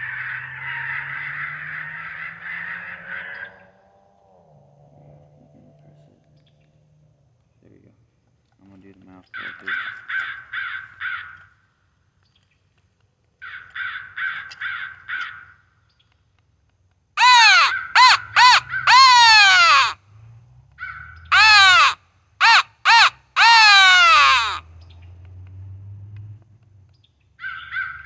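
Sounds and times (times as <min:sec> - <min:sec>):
electronic crow caws: 0:00.0 - 0:03.8, 0:09.3 - 0:11.6, 0:13.4 - 0:15.6, 0:17.2 - 0:20.0, 0:20.8 - 0:24.7, 0:27.4 - 0:28.0.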